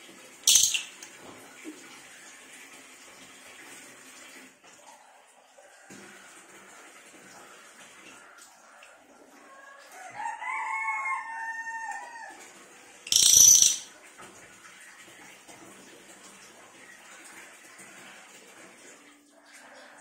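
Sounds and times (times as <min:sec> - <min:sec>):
shrill high-pitched bird call: 0:00.5 - 0:01.0, 0:13.1 - 0:13.9
rooster crowing: 0:09.8 - 0:12.4.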